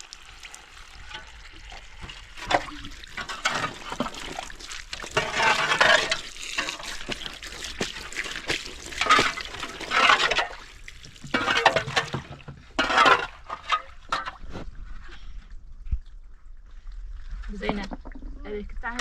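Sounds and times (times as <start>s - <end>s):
water splashing and pouring: 0.0s - 14.8s.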